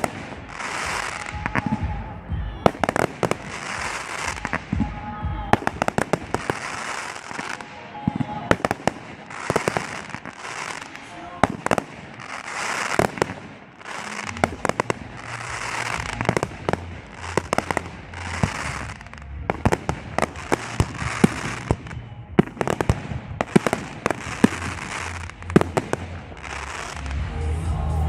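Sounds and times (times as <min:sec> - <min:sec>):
fireworks bangs: 0:00.0 - 0:28.0
fireworks crackling: 0:00.0 - 0:28.0
low rumble: 0:14.3 - 0:28.0.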